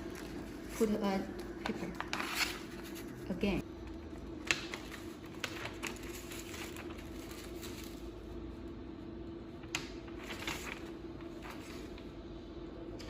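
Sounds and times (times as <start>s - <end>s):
paper sheets rustling: 0.0s - 3.4s, 4.2s - 8.4s, 9.6s - 12.3s
steady low hum: 0.0s - 13.0s.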